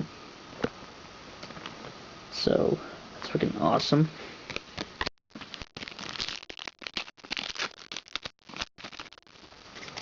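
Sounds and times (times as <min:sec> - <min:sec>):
foil pack crinkling and tearing: 0:04.5 - 0:10.0.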